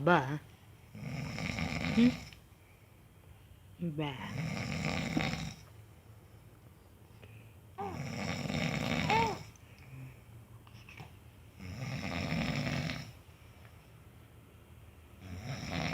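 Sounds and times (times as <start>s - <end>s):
man snoring: 0.9s - 2.3s, 4.3s - 5.6s, 7.8s - 9.5s, 11.6s - 13.2s, 15.2s - 15.9s.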